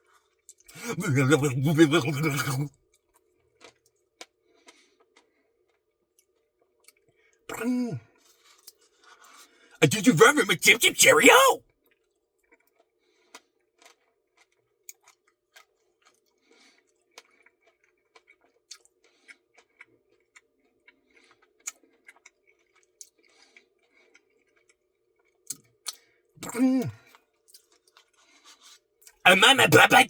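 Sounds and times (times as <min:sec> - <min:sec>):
soft chewing: 0:08.2 - 0:09.5, 0:12.6 - 0:26.0, 0:26.8 - 0:29.2.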